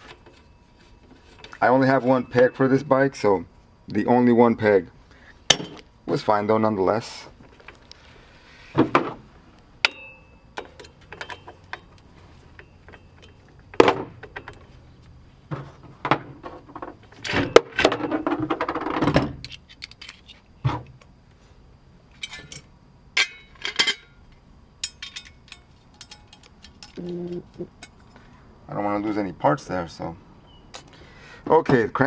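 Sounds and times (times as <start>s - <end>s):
metal bike parts clinking: 0.0s - 3.2s, 5.5s - 5.9s, 9.8s - 14.8s, 16.7s - 18.8s, 19.4s - 20.5s, 22.1s - 28.2s
metal parts rattling: 9.9s - 14.8s, 16.7s - 20.5s, 22.1s - 24.2s, 24.8s - 28.1s.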